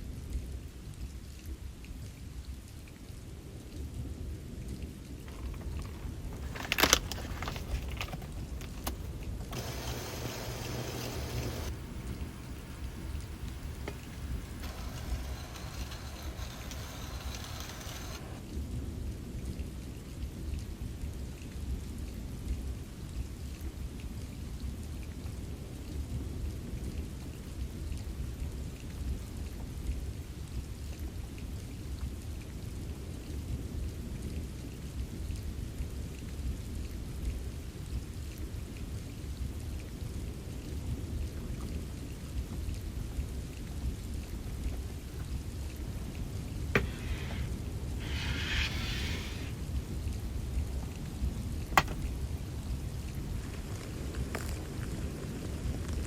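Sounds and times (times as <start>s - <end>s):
steady rain falling: 0.0s - 56.0s
bright hiss: 9.5s - 18.4s, 46.8s - 49.6s.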